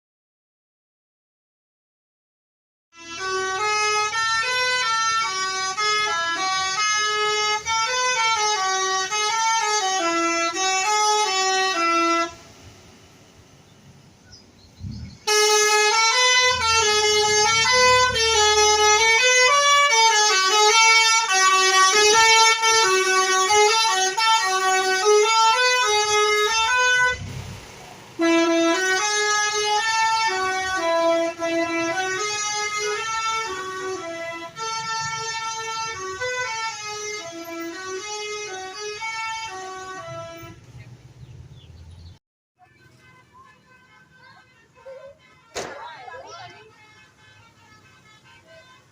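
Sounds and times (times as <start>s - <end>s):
multi-tone bus horn tune: 2.9s - 12.6s, 15.2s - 40.9s, 41.6s - 48.9s.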